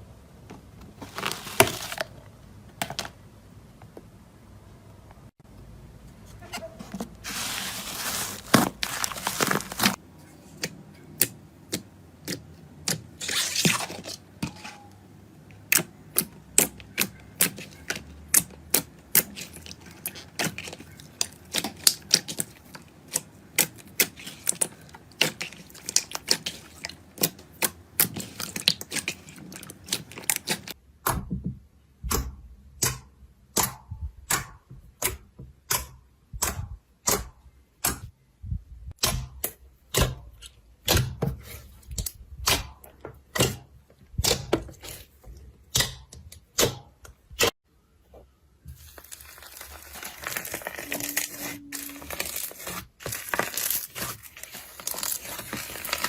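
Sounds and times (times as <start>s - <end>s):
slime crackling: 7.2s - 10.0s, 16.1s - 30.8s, 48.8s - 56.0s.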